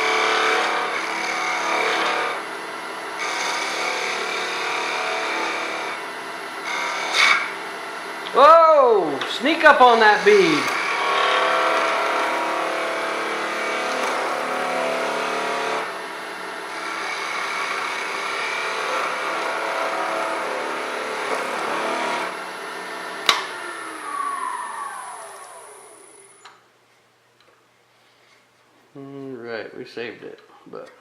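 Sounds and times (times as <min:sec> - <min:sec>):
turning tool cutting wood: 0:00.0 - 0:02.4, 0:03.2 - 0:06.0, 0:06.6 - 0:07.5, 0:09.4 - 0:15.9, 0:16.6 - 0:26.4
wood lathe running: 0:00.0 - 0:02.4, 0:03.1 - 0:06.0, 0:06.6 - 0:07.5, 0:09.4 - 0:15.9, 0:16.6 - 0:26.4.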